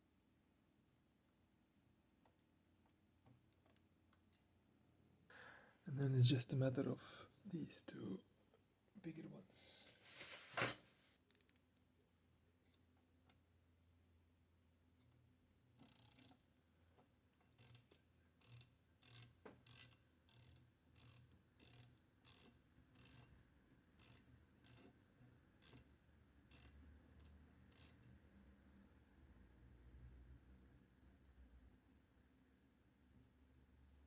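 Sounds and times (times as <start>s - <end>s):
screwdriver scratching screw: 24.0s - 24.9s, 27.7s - 28.0s.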